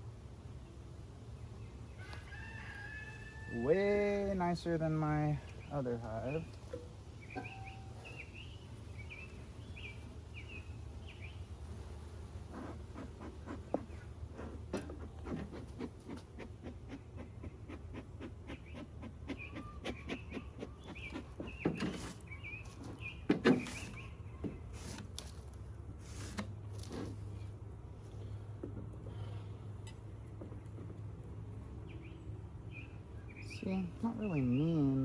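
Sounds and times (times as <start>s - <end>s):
bird chirping faintly: 5.4s - 11.5s.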